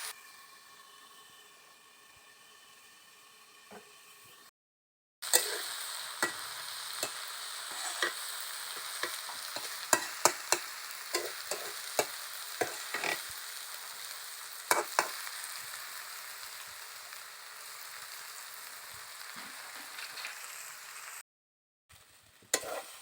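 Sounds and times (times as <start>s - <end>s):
food sizzling in a pan: 0.0s - 4.5s, 5.2s - 21.2s, 21.9s - 23.0s
spoon scraping and clinking pan: 5.3s - 13.2s, 14.7s - 15.2s, 22.5s - 23.0s.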